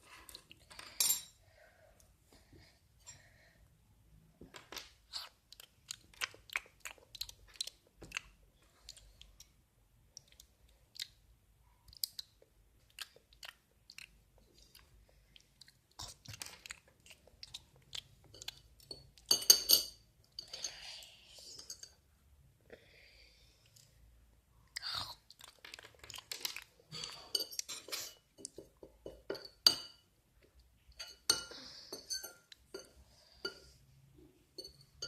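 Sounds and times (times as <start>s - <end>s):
person chewing crunchy food: 5.1s - 9.4s.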